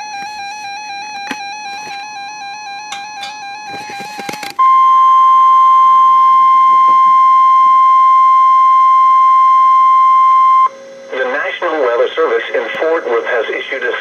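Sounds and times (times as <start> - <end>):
steady alarm beep: 4.6 - 10.8.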